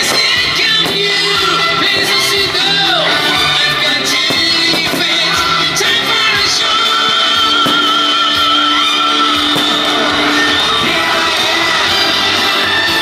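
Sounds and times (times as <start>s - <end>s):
music: 0.0s - 13.0s
person singing with vibrato: 0.0s - 13.0s.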